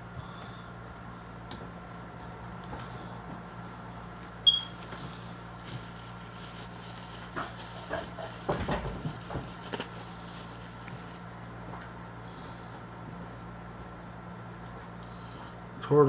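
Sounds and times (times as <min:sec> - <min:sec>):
faint steady hum: 0:00.0 - 0:16.0
small clicks and cardboard rustles: 0:04.7 - 0:11.5.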